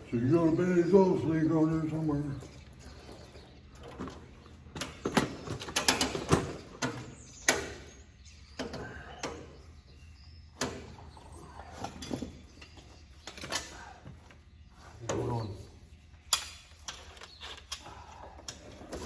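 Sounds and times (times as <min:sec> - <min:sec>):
tools and parts clinking: 0:02.2 - 0:07.9, 0:10.6 - 0:15.2, 0:16.2 - 0:19.0.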